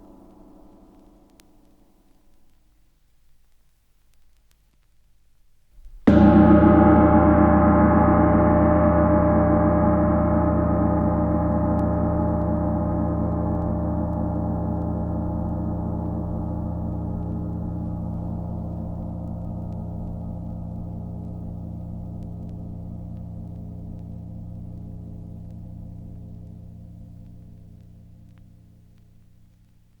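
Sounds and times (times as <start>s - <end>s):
faint clicks: 0.0s - 6.0s
gong ringing: 6.1s - 22.1s.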